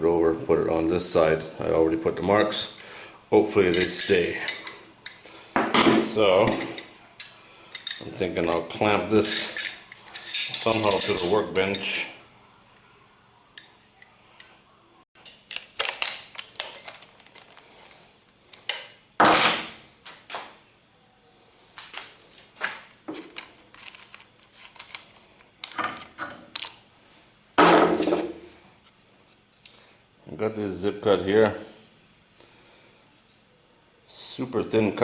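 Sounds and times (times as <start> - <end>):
metal tools clinking on workbench: 3.6 - 12.0, 18.6 - 19.7.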